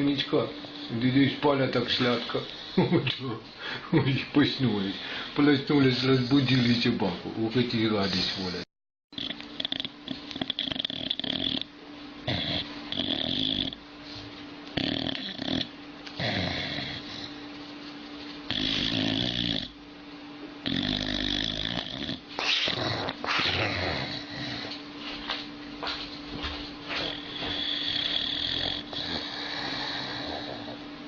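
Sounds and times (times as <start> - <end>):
steady low hum: 0.0 - 31.0
dog snoring: 9.2 - 13.8, 14.8 - 17.4, 18.5 - 19.8, 20.6 - 24.8, 26.8 - 30.8.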